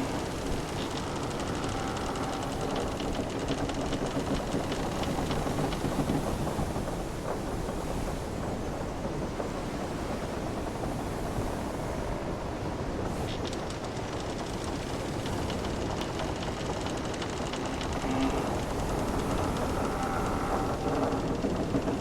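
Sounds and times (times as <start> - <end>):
wooden hull creaking: 0.0 - 6.7, 12.7 - 22.0
small clicks and ticks: 0.0 - 7.4, 13.0 - 22.0
ocean waves washing: 7.4 - 22.0.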